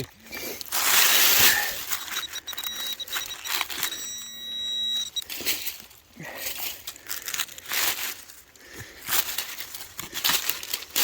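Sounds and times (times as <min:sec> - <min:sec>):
digging in soil: 0:00.0 - 0:11.0
metal detector electronic tone: 0:01.5 - 0:05.5.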